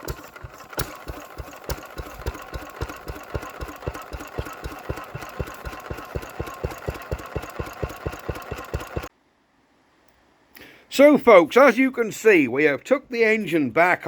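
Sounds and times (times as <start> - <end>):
diesel engine thumping: 0.0 - 9.1.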